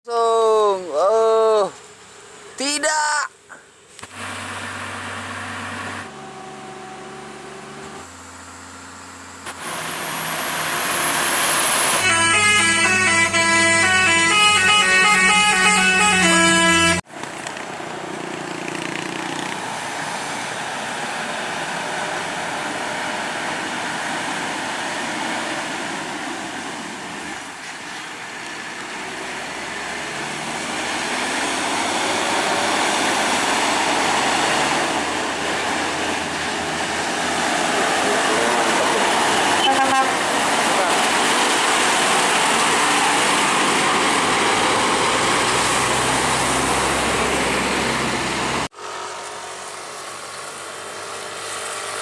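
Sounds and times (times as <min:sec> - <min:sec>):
road noise: 0:00.0 - 0:52.0
heavy truck engines: 0:04.0 - 0:52.0
horn playing held notes: 0:12.0 - 0:17.0.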